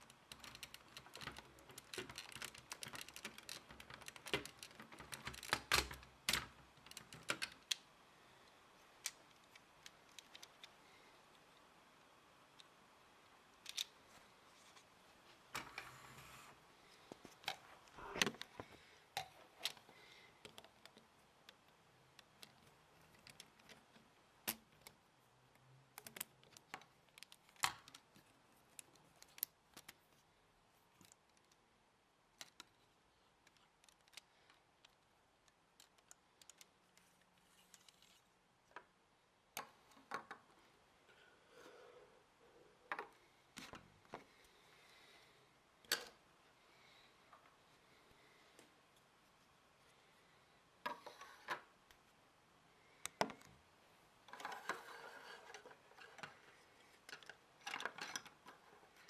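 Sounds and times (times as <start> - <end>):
plastic toy bricks clicking: 0.0 - 7.8.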